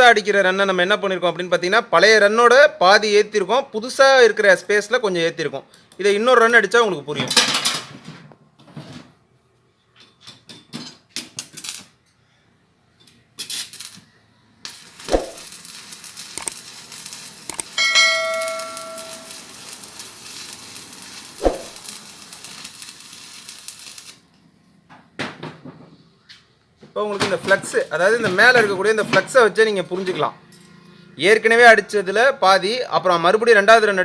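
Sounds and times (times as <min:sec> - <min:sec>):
welding arc crackling and hissing: 0:13.4 - 0:24.4, 0:27.6 - 0:28.2
bell-like metallic ring: 0:17.8 - 0:19.5.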